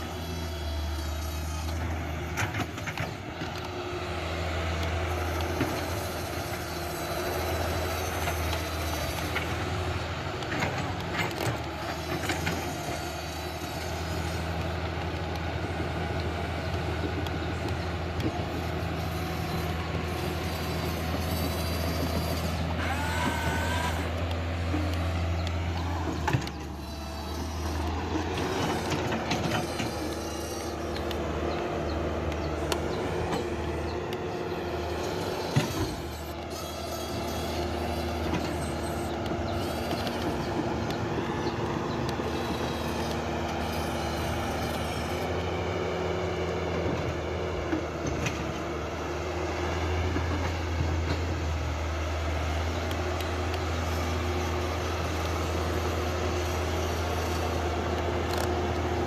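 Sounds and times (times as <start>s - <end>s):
toy excavator motors whirring: 0.0s - 59.0s
wavering whine: 22.4s - 26.8s.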